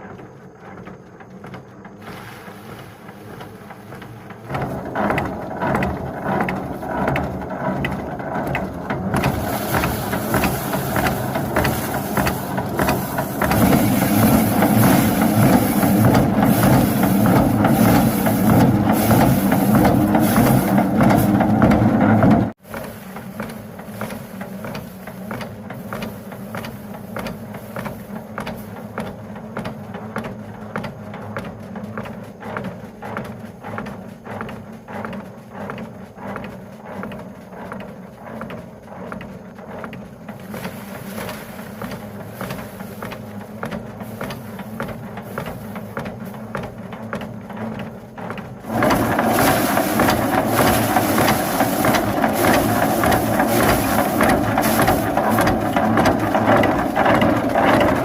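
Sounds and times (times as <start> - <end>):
regular clatter of knocks: 0.0 - 2.0, 3.1 - 58.0
motor humming: 0.0 - 29.0, 48.3 - 58.0
loud machine noise: 2.0 - 26.9, 48.6 - 58.0.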